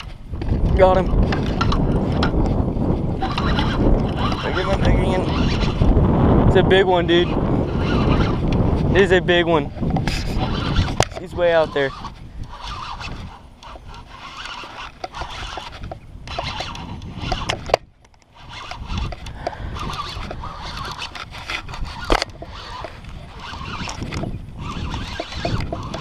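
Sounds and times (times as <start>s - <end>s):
fishing reel clicking: 0.0s - 6.0s, 6.7s - 26.0s
handling rustle: 9.6s - 26.0s.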